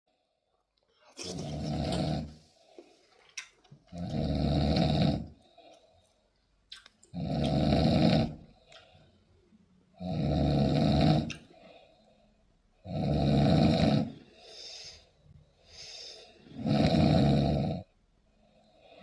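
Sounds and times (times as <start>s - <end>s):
soft breaths: 0.1s - 6.7s, 8.2s - 10.0s, 11.2s - 12.9s, 14.0s - 17.2s, 17.8s - 19.0s
man snoring: 1.2s - 2.5s, 3.9s - 5.4s, 7.1s - 8.6s, 10.0s - 11.4s, 12.8s - 14.9s, 15.8s - 17.9s.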